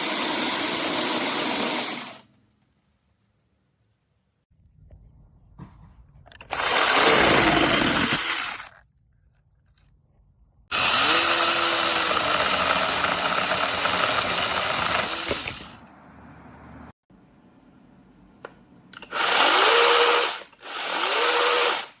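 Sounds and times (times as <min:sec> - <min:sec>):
electric chainsaw motor whine: 0:06.5 - 0:08.7, 0:10.7 - 0:15.8, 0:19.0 - 0:22.0.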